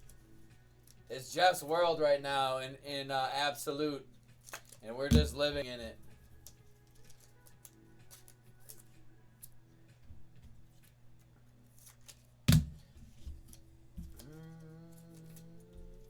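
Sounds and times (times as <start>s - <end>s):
cards clicking and rustling: 4.2s - 9.6s, 10.4s - 16.0s.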